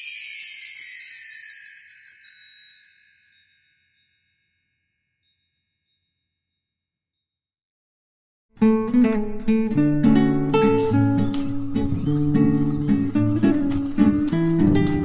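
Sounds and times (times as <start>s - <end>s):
shimmering bell-like chime: 0.0s - 6.9s.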